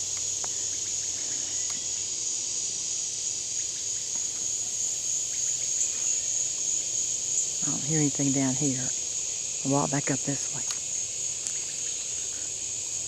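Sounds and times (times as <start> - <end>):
insect chorus drone: 0.0 - 13.0
faint ticks: 0.1 - 0.9, 1.5 - 1.9, 11.4 - 11.6.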